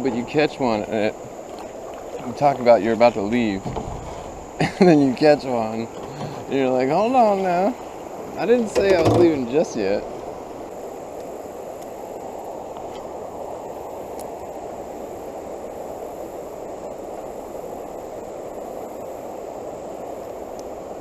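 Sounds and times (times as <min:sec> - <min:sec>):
creek rushing: 0:00.0 - 0:21.0.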